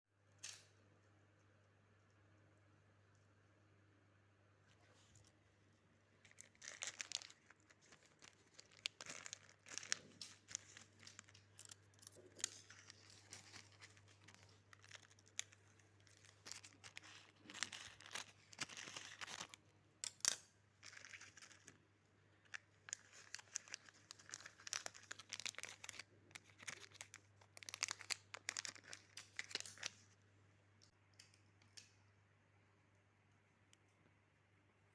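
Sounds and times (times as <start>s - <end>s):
packaging tearing and crinkling: 6.2s - 19.6s, 20.8s - 21.7s, 22.5s - 30.0s.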